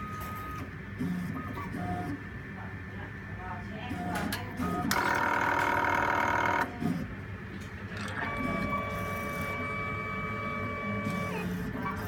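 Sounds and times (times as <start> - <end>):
mechanical hum: 0.0 - 12.0.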